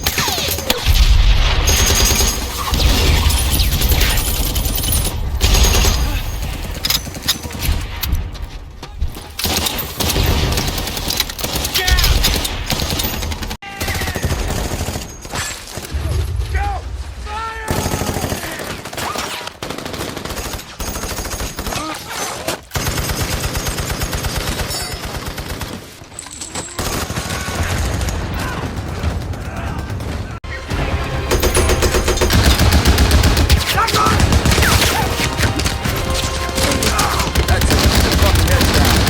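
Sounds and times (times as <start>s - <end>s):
automatic gunfire: 31.3s - 39.0s
rifle shots: 31.3s - 39.0s.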